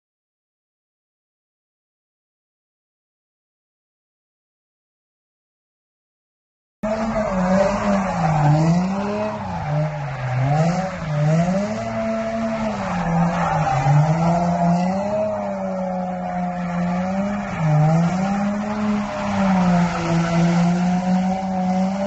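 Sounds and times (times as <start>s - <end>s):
car engine revving: 6.8s - 22.0s
tyres squealing: 6.9s - 21.6s.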